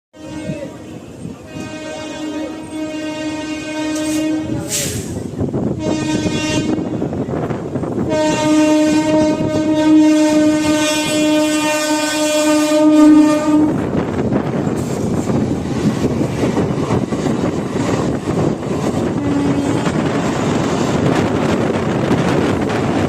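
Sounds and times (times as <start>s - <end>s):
train horn blasts: 0.2s - 7.2s, 8.0s - 14.0s, 18.9s - 20.3s
moving train rumble and clatter: 0.2s - 23.0s.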